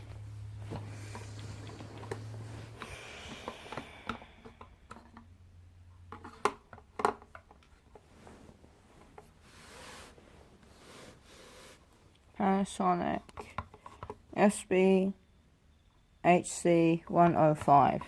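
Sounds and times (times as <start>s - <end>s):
speaker parts clicking and knocking: 6.0s - 8.0s.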